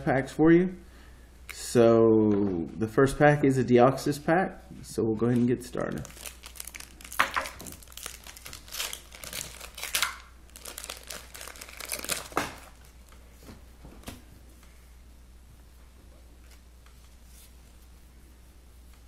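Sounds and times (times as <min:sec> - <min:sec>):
foil wrapper tearing and crinkling: 0:05.9 - 0:13.2.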